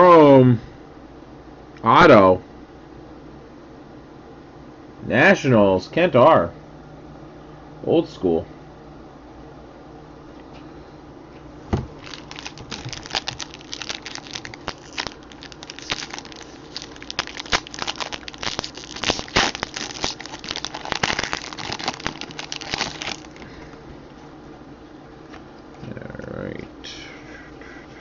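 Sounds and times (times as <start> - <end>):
plastic foil wrapper crinkling: 11.9 - 23.8.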